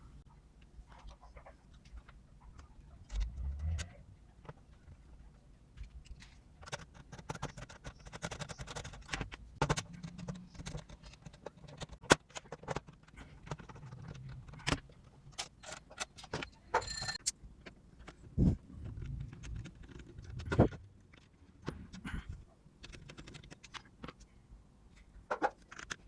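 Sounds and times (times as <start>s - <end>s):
metal parts clinking on tool box: 15.6s - 17.3s.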